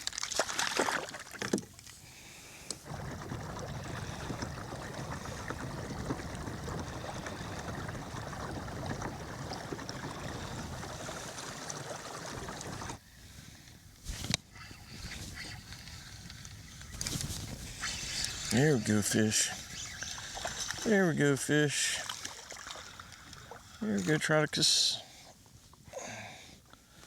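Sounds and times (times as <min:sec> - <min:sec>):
rushing wind and water: 0:02.7 - 0:13.0, 0:17.0 - 0:24.0.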